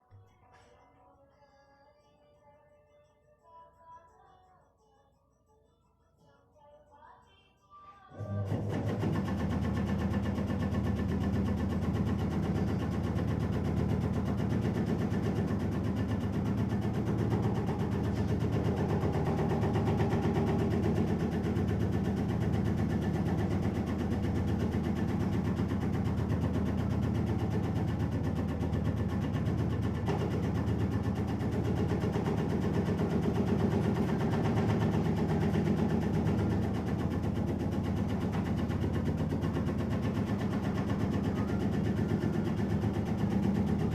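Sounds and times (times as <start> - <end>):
shredding machine droning: 8.2 - 43.9.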